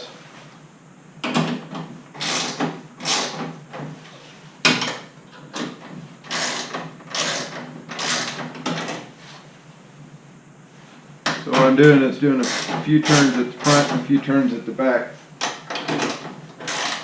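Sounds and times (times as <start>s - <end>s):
tool scraping strokes: 12.4s - 14.0s, 16.6s - 17.0s.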